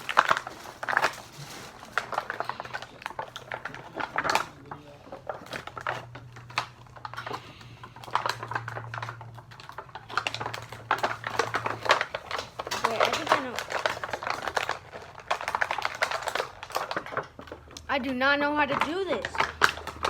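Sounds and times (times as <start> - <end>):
plastic packaging clicks: 0.0 - 20.0.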